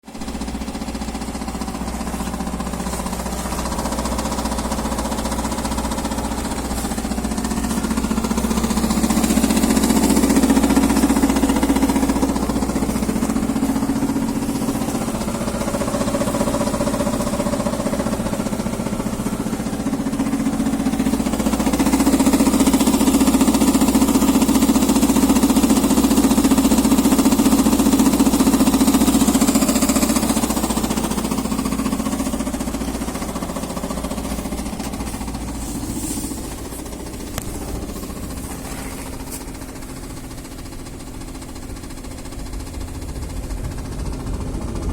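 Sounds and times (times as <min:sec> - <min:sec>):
car engine running: 0:00.0 - 0:44.9
tensioner pulley knocking rattle: 0:00.2 - 0:44.9.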